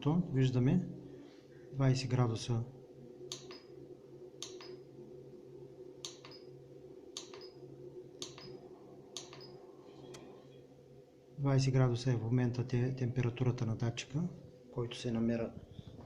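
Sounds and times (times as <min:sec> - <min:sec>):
stove fan humming: 0:00.0 - 0:16.0
sharp clicks: 0:04.4 - 0:04.8, 0:07.2 - 0:07.5, 0:08.2 - 0:08.6, 0:09.2 - 0:09.5.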